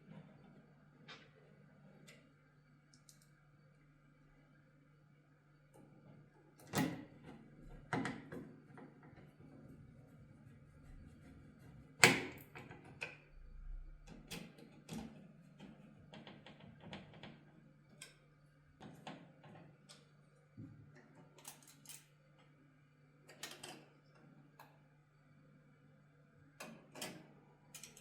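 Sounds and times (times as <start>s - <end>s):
steady low hum: 13.2s - 14.3s.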